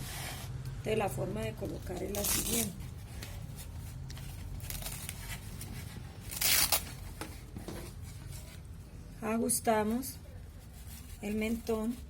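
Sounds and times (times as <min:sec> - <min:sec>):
velcro strap ripping open: 0:02.1 - 0:02.8, 0:06.3 - 0:07.0.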